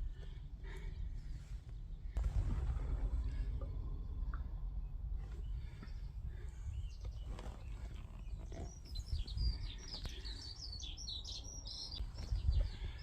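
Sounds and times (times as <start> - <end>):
low uneven rumble: 0.0 - 10.4.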